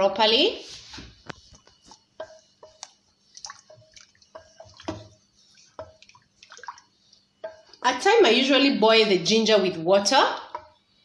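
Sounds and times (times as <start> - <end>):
liquid plinks: 2.2 - 7.8.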